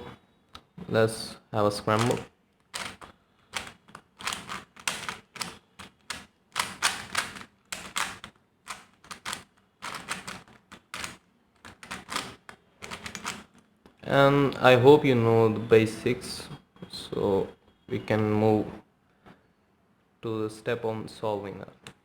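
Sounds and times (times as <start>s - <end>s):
puzzle cube layers clicking: 1.9s - 13.6s.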